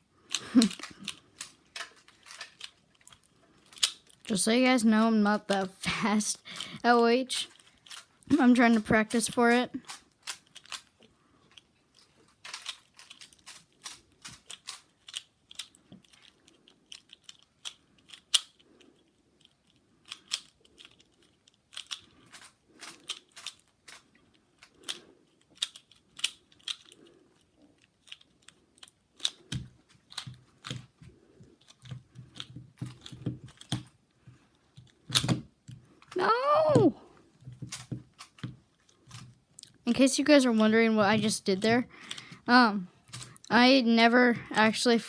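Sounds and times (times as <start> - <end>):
plastic puzzle cube clicking: 0.2 - 40.0, 41.0 - 44.9.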